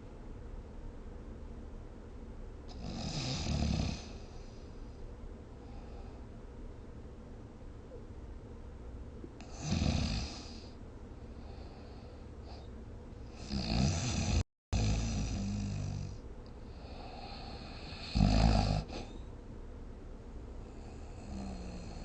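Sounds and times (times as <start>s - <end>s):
person snoring: 2.7s - 4.5s, 9.4s - 10.8s, 13.3s - 16.2s, 16.8s - 19.1s, 20.7s - 22.0s.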